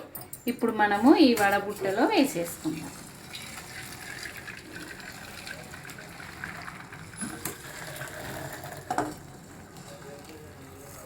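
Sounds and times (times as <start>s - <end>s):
water gushing into colander: 1.9s - 9.6s.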